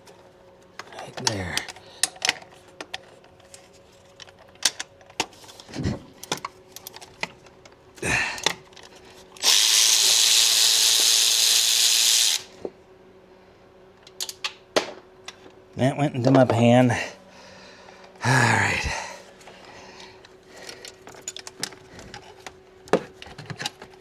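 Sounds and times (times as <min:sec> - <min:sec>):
power tool running: 0:09.4 - 0:12.6.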